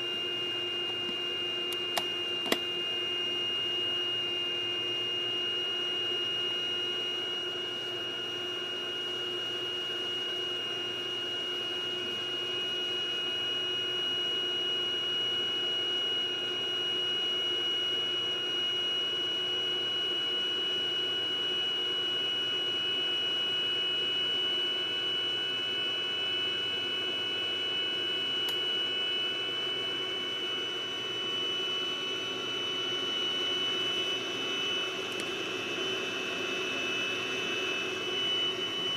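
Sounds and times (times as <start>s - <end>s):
computer fans whirring: 0.0s - 8.6s, 22.7s - 38.9s
high-pitched electrical whine: 23.2s - 38.9s.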